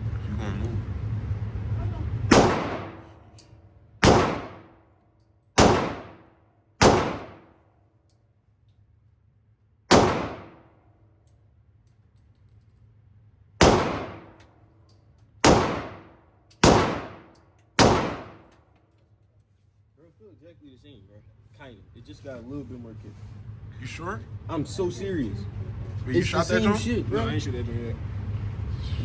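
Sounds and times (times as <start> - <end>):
pistol shots echoing: 2.3 - 3.4, 4.0 - 4.8, 5.6 - 7.6, 9.9 - 10.8, 13.6 - 14.4, 15.4 - 18.5.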